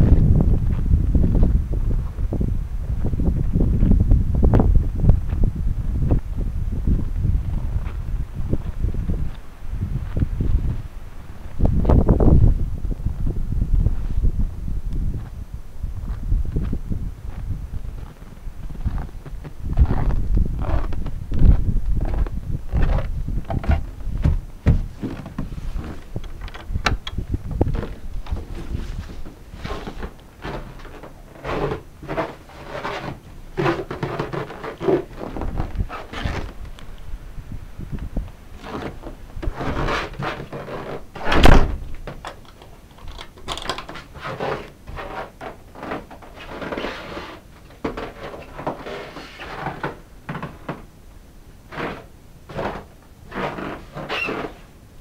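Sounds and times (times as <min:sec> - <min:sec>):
footsteps crunching in snow: 0:16.0 - 0:26.2, 0:27.5 - 0:36.7.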